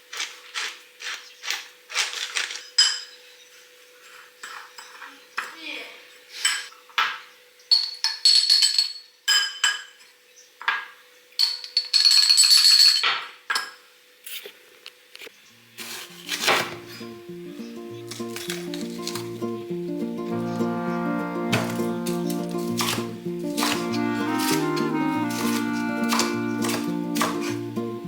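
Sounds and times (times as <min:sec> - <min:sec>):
cutlery clinking against dishes: 0:02.5 - 0:03.2, 0:04.2 - 0:05.6, 0:06.2 - 0:13.8, 0:18.0 - 0:19.4, 0:21.5 - 0:27.7
music: 0:16.0 - 0:28.0.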